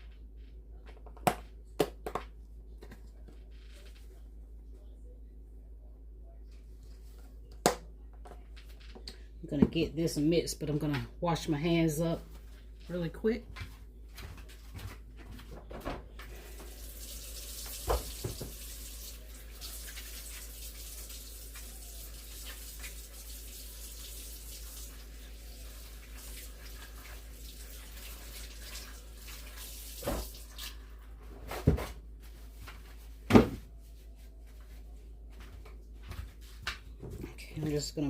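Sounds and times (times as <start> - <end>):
tap water running into sink: 16.5 - 30.8.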